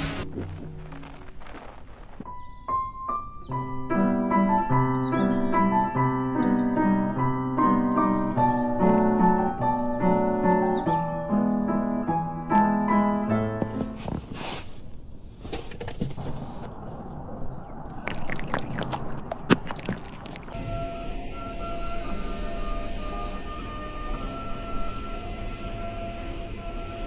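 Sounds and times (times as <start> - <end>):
piano music repeated notes: 2.2 - 14.0
hiss: 20.6 - 27.0.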